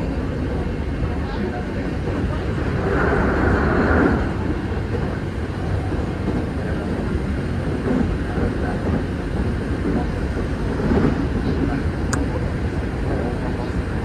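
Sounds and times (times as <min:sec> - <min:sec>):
train wheels rumbling on rails: 0:00.0 - 0:14.0.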